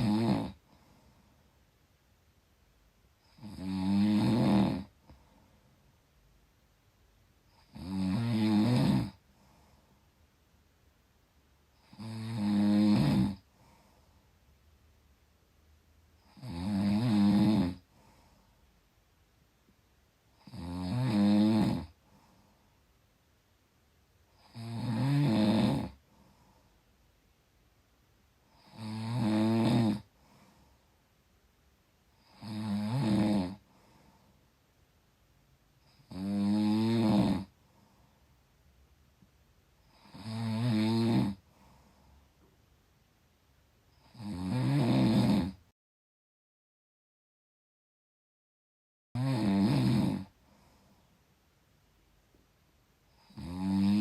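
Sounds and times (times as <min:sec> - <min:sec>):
person snoring: 0:00.0 - 0:01.2, 0:03.2 - 0:05.3, 0:07.5 - 0:09.8, 0:11.8 - 0:14.0, 0:16.2 - 0:18.4, 0:20.4 - 0:22.4, 0:24.3 - 0:26.6, 0:28.5 - 0:30.7, 0:32.2 - 0:34.2, 0:35.8 - 0:38.0, 0:39.8 - 0:42.2, 0:44.0 - 0:45.7, 0:49.2 - 0:50.9, 0:53.1 - 0:54.0.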